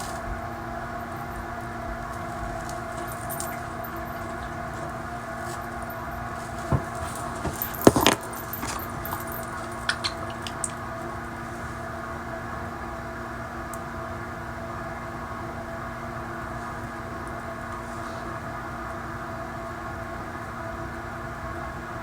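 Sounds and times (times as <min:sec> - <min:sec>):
room hum: 0:00.0 - 0:22.0
objects clicking and clattering: 0:02.1 - 0:10.8.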